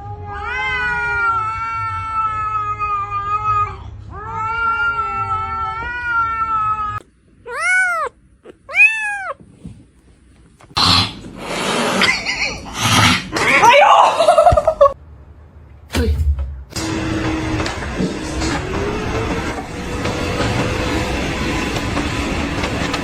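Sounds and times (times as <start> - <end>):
cat meowing: 0.0 - 9.5.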